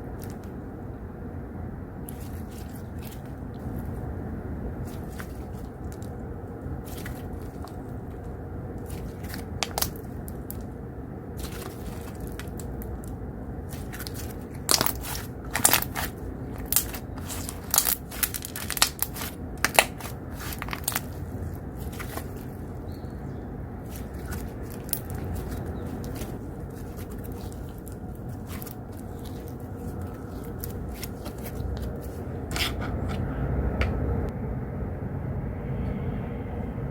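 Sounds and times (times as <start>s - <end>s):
low background noise: 0.0s - 36.9s
slime crackling and popping: 6.8s - 7.9s, 8.8s - 10.7s, 11.4s - 22.8s, 23.8s - 32.8s.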